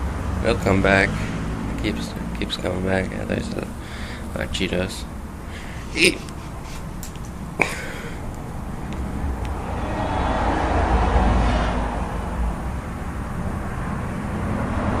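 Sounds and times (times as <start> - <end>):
vehicle driving past: 0.0 - 4.3, 8.0 - 15.0.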